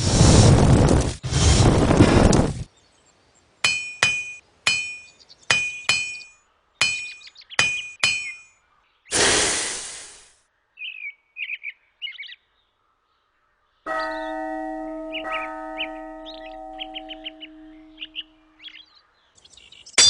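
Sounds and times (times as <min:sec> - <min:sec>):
burst of hiss: 0:00.0 - 0:02.5, 0:09.1 - 0:10.4
birds chirping: 0:02.6 - 0:09.2, 0:10.5 - 0:20.0
hammer clanging on anvil: 0:03.7 - 0:08.5.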